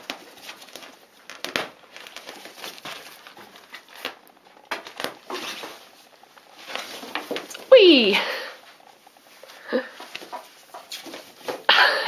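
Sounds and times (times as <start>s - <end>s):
kittens scratching fabric: 0.0s - 7.8s, 8.6s - 11.7s.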